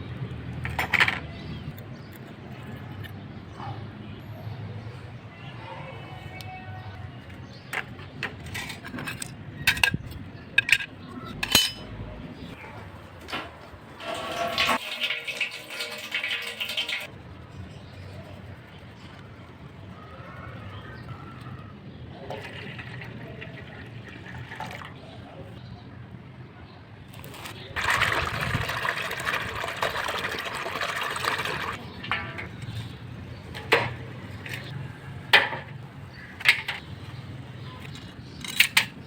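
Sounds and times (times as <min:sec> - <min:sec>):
water running and splashing: 0:14.0 - 0:17.1, 0:27.8 - 0:31.8.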